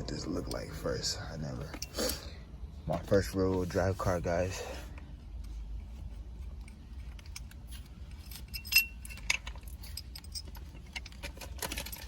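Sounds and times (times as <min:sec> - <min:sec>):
small metal tools clinking: 0:07.2 - 0:12.0.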